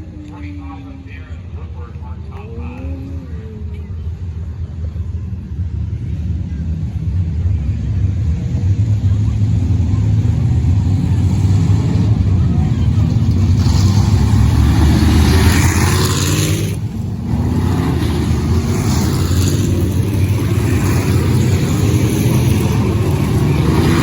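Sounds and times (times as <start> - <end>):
race car engines at high revs: 6.1 - 24.0.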